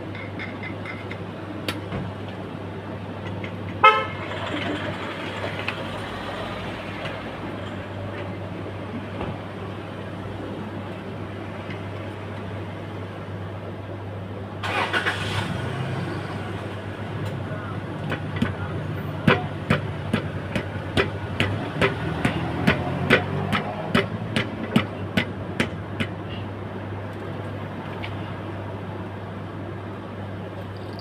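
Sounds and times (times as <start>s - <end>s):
traffic hum: 0.0s - 31.0s
vehicle horn toot: 3.8s - 4.2s.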